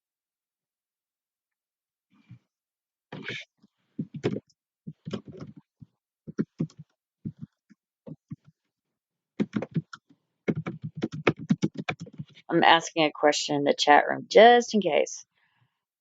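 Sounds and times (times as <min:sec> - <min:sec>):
choppy voice over a call: 0:12.5 - 0:15.2.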